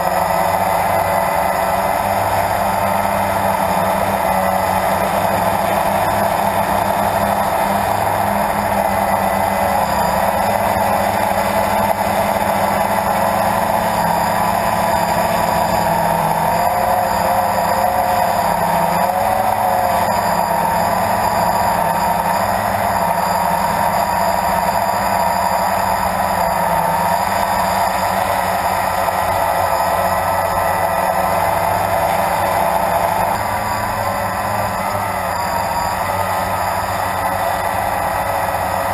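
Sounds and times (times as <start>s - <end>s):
drone propellers buzzing: 0.0s - 38.9s.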